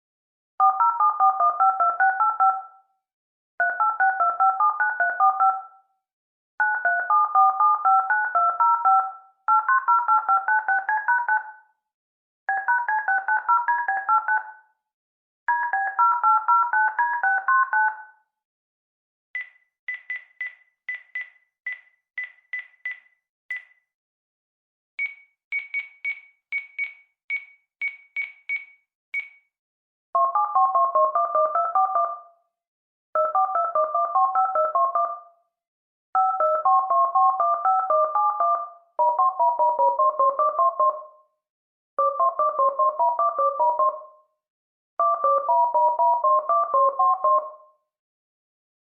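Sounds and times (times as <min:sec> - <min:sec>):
two-tone keypad beeps: 0:19.4 - 0:23.8, 0:25.0 - 0:29.6
short high-pitched beeps: 0:25.0 - 0:29.5.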